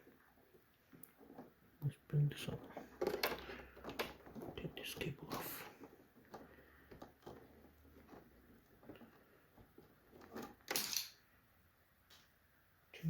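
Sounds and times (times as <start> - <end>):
cable clicking and rustling: 0.0 - 11.2.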